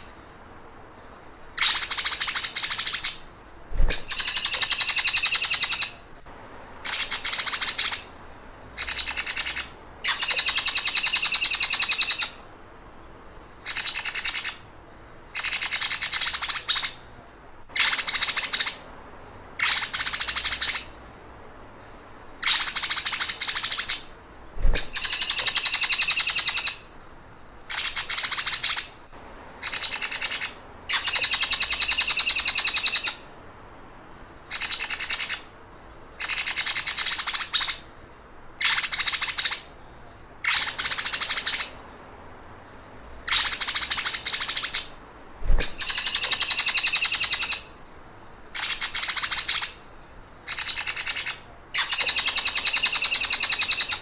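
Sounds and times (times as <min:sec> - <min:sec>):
songbird stuttering trill: 0:01.6 - 0:06.0, 0:22.4 - 0:26.8, 0:43.3 - 0:47.7
low thump: 0:24.6 - 0:25.0.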